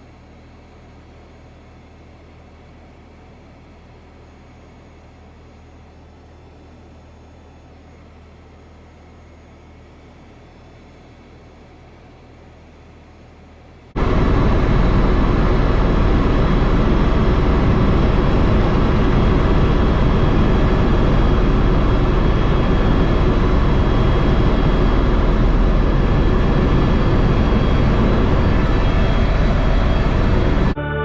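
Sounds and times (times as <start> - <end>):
steady whining tones: 3.4 - 31.0
helicopter engine and rotor noise: 13.9 - 30.8.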